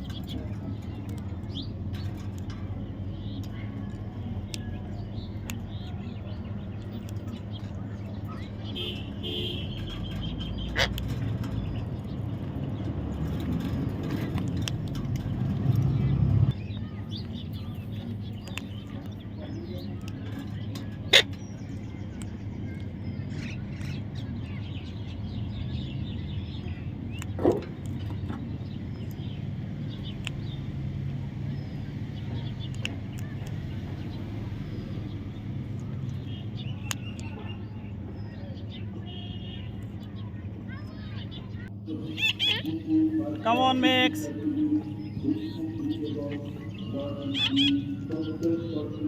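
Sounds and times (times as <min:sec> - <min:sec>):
sharp clicks: 0:32.4 - 0:34.0, 0:35.6 - 0:37.4.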